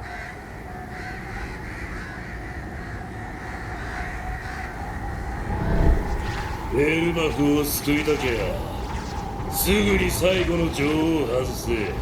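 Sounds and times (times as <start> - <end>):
crow-like cawing: 0.0 - 6.4
steady low rumble: 5.1 - 7.5.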